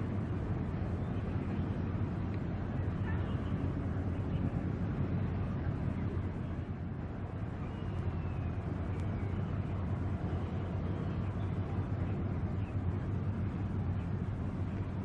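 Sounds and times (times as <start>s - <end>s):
steady low rumble: 0.0s - 15.0s
faint whistle-like glide: 7.5s - 12.8s.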